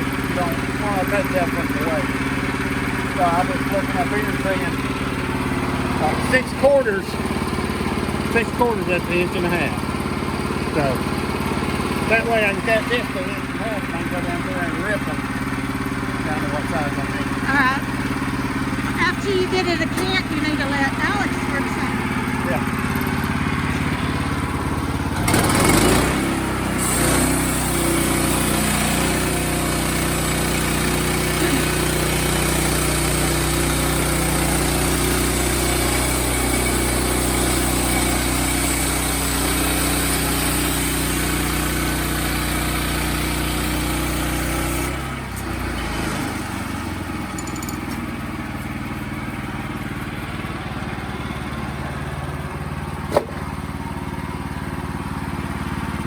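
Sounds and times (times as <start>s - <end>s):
sawmill engine running: 0.0s - 56.0s
band saw blade cutting log: 18.8s - 46.5s, 53.0s - 53.6s.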